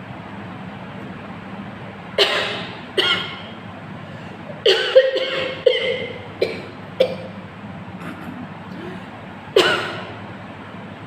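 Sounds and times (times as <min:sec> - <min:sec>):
woman coughing: 0:02.2 - 0:03.4, 0:04.6 - 0:07.3, 0:09.6 - 0:10.2.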